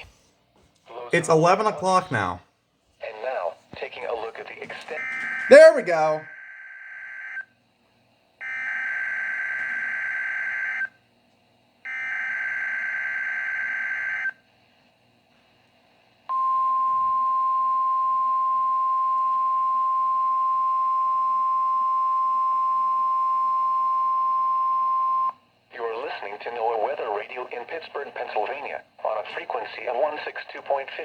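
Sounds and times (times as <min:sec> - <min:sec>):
steady warning alarm tone: 0:04.8 - 0:07.5, 0:08.4 - 0:11.0, 0:11.9 - 0:14.4, 0:16.3 - 0:25.4.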